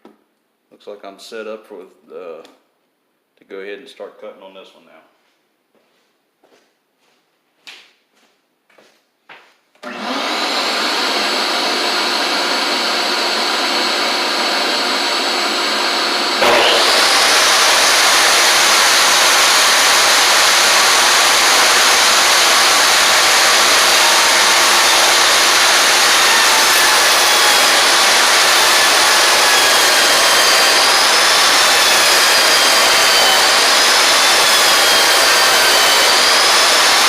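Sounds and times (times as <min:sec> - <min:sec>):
table saw whine: 0:09.8 - 0:37.0.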